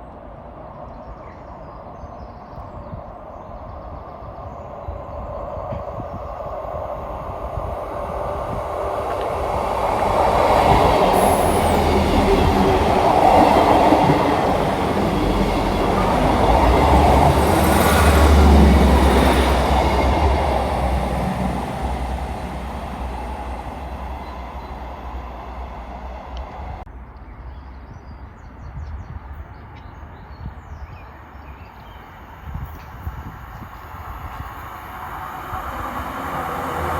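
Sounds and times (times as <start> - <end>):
train wheel noise: 5.6 - 26.8
diesel train engine drone: 5.7 - 26.8, 33.1 - 36.9
high wheel squeals: 10.8 - 13.6.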